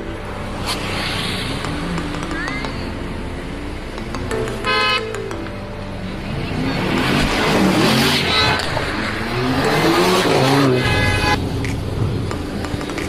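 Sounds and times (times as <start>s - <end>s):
road traffic noise: 0.0s - 13.0s
vehicle approaching: 0.0s - 13.0s
car horn: 4.6s - 5.3s, 7.8s - 11.5s.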